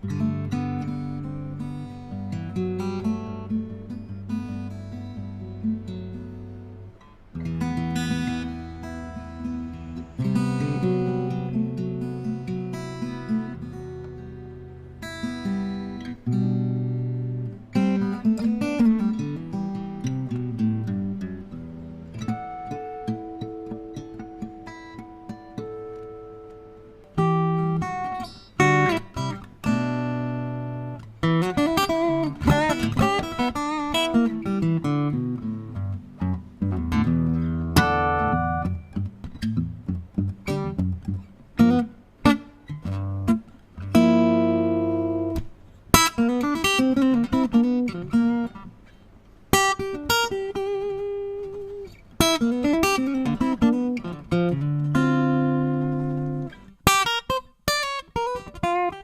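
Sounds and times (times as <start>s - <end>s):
acoustic guitar playing: 0.0s - 59.0s.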